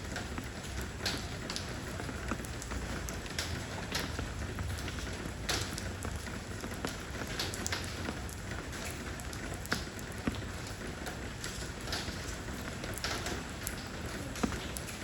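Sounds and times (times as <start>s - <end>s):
rain on stepping stones: 0.0s - 15.0s.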